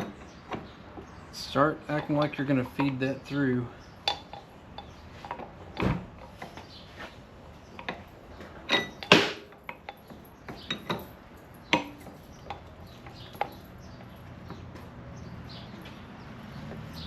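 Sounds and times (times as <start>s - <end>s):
metal clinks and knocks: 1.8s - 3.2s, 4.0s - 6.7s, 7.7s - 14.6s.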